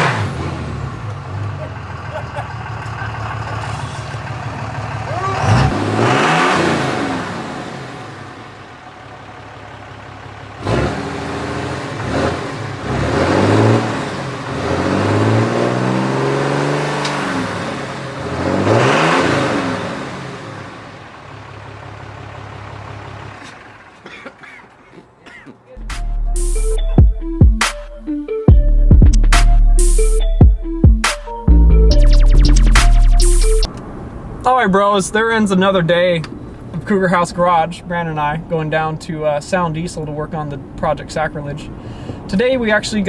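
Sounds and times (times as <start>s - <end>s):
vehicles accelerating past: 0.0s - 24.0s.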